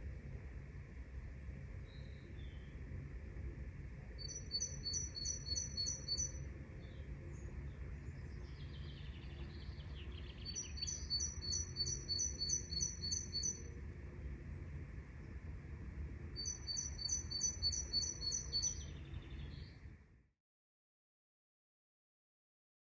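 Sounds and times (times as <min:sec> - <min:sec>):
low steady rumble: 0:00.0 - 0:20.1
soft bird chirps: 0:04.2 - 0:13.7, 0:16.4 - 0:19.9.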